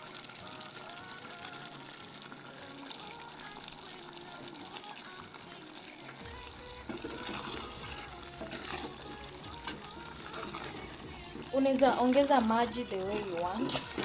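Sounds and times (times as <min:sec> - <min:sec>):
soft background music: 0:00.0 - 0:14.0
stew bubbling in a pot: 0:00.0 - 0:14.0.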